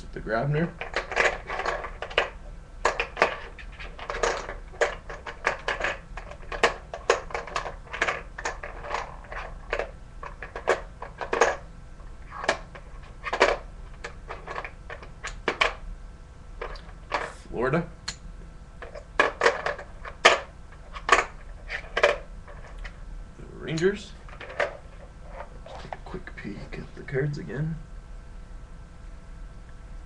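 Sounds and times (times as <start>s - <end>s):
cards clicking and rustling: 0.8s - 11.6s, 12.3s - 15.8s.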